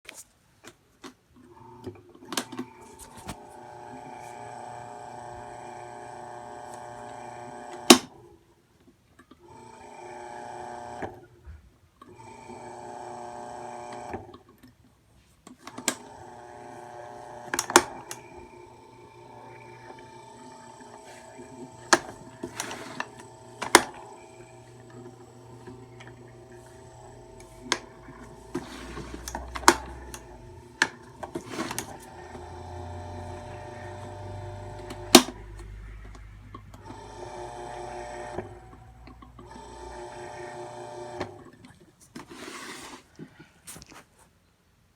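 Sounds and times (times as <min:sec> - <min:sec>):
electric fan buzzing: 0:02.4 - 0:08.2, 0:12.2 - 0:14.2, 0:15.7 - 0:41.5.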